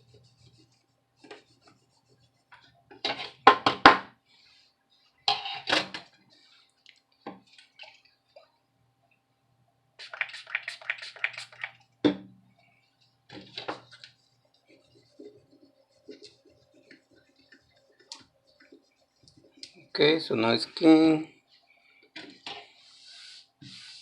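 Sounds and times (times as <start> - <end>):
toothbrush scrubbing: 0.0 - 2.8, 10.0 - 11.8, 13.3 - 20.0.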